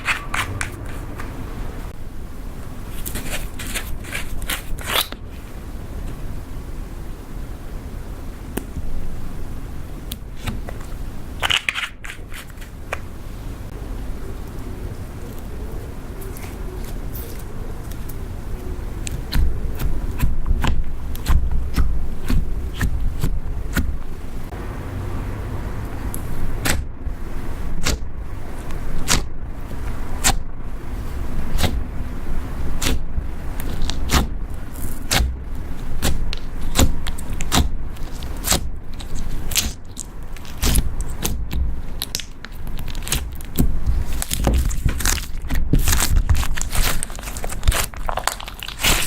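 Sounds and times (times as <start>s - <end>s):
slime squishing with sticky pops: 19.0s - 24.1s, 27.8s - 29.3s, 32.7s - 49.0s.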